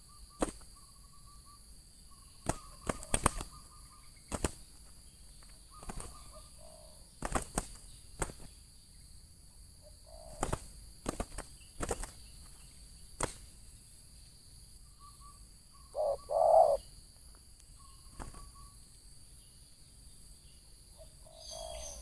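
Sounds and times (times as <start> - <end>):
high insect drone: 0.0 - 22.0
dove cooing: 5.7 - 7.1, 10.0 - 10.6, 15.9 - 16.8, 21.0 - 22.0.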